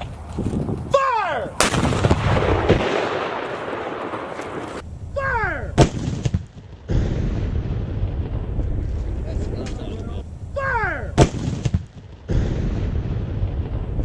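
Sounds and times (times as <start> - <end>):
cannon firing: 1.6 - 4.8, 5.8 - 8.9, 11.2 - 14.0.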